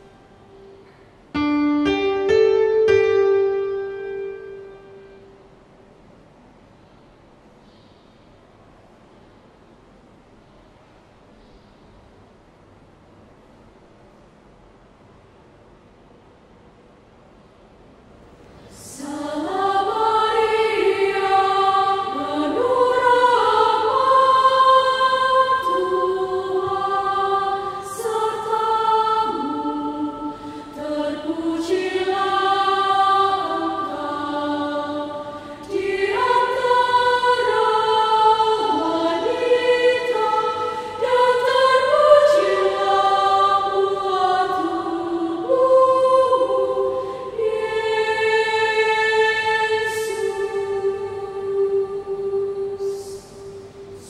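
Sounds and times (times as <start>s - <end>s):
choir singing: 0.0s - 5.4s, 18.7s - 54.0s.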